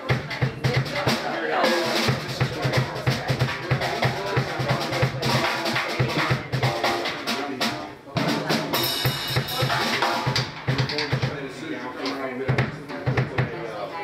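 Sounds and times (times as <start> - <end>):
cymbals ringing: 8.6 - 11.0
kick and snare drum hits: 9.0 - 11.4, 12.5 - 13.6.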